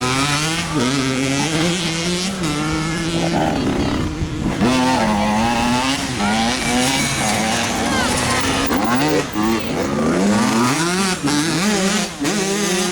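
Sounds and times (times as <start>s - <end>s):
race engines revving: 0.0s - 12.9s.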